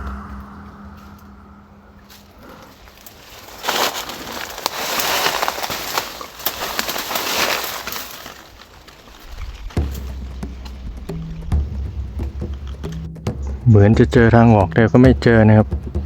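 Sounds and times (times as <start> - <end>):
footsteps crunching dry leaves: 2.1 - 10.3.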